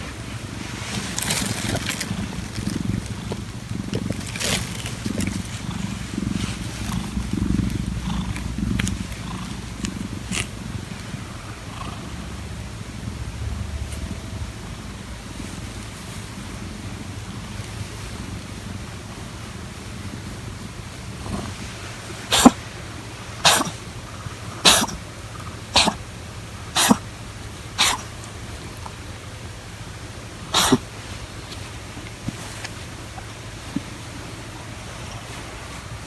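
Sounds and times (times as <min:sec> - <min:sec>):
cat coughing: 0:22.3 - 0:22.6, 0:23.4 - 0:23.9, 0:24.5 - 0:25.1, 0:25.7 - 0:26.1, 0:26.7 - 0:27.0, 0:27.8 - 0:28.2, 0:30.5 - 0:30.9.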